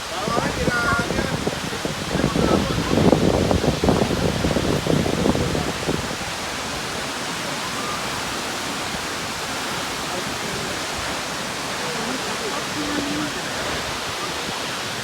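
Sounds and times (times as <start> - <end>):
gusty low rumbling: 0.0 - 7.6
waterfall rushing: 0.0 - 15.0.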